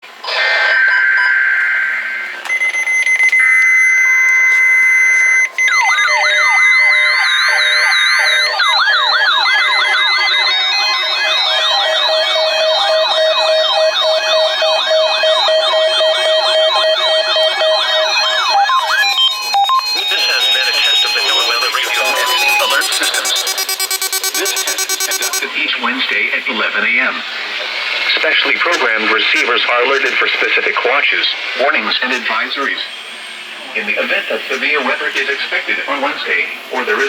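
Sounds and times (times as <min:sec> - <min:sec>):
warbling electronic sirens: 0:00.2 - 0:37.0
steady high alarm tones: 0:00.7 - 0:37.0
two-tone data burst: 0:02.1 - 0:26.6.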